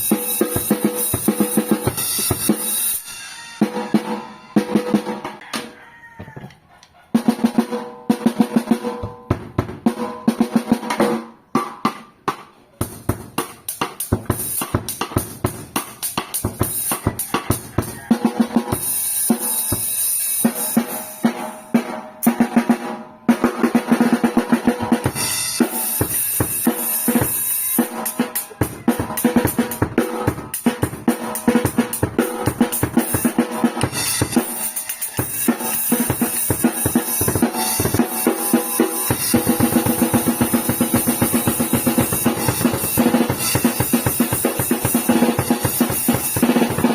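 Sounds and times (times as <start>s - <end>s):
crashing cymbals: 0.0s - 5.0s, 18.7s - 22.4s, 25.0s - 28.5s, 30.3s - 46.9s
drum kit playing: 0.0s - 46.9s.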